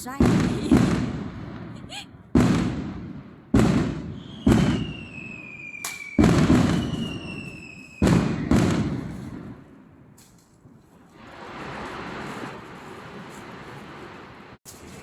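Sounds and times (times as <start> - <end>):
fireworks booming: 0.0 - 14.9
sharp firework crack: 0.2 - 10.5
falling firework whistles: 3.6 - 9.6.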